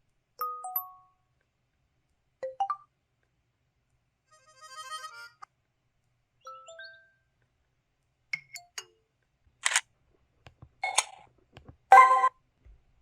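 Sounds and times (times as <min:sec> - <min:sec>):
camera shutter clicks: 0:09.6 - 0:09.8.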